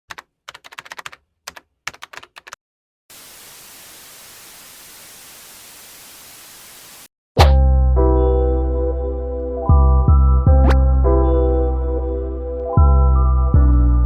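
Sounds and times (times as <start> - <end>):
static hiss: 3.1 - 7.1.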